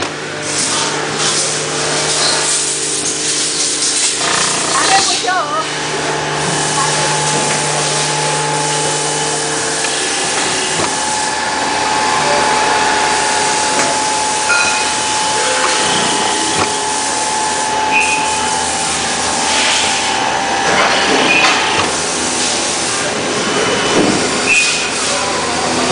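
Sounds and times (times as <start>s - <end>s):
riveting machine running: 0.0s - 25.9s
short high beeps: 17.9s - 18.6s.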